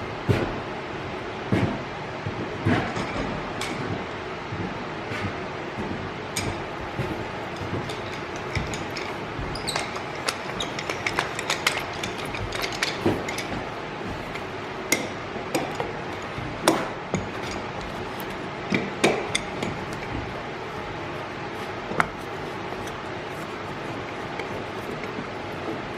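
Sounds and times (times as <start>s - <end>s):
hand tool tapping on wood: 21.6s - 25.6s.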